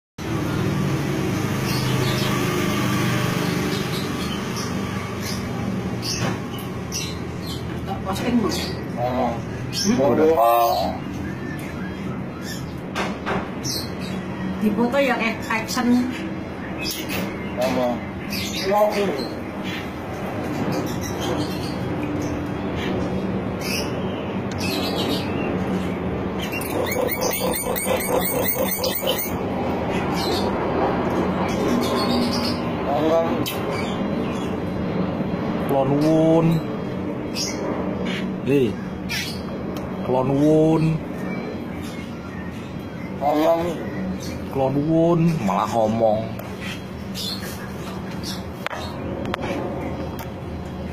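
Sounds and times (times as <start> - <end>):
bird chirping: 23.6 - 30.5.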